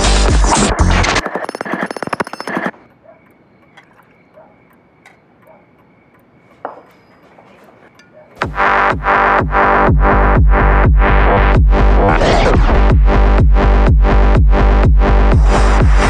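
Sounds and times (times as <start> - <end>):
loud electronic music: 0.0 - 1.2, 8.4 - 16.0
faint ticks: 2.7 - 7.3.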